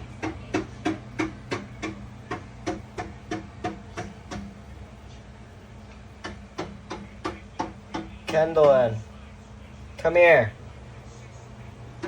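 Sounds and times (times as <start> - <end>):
steady low hum: 0.0 - 12.0
rapid knocking: 0.2 - 4.5.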